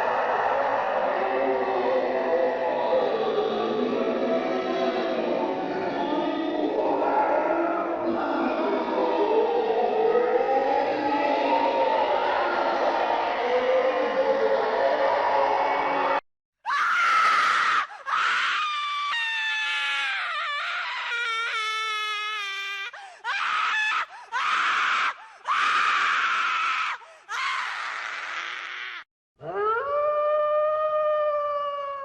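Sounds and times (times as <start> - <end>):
person screaming in agony: 16.7 - 32.0
wolf howling: 29.4 - 32.0.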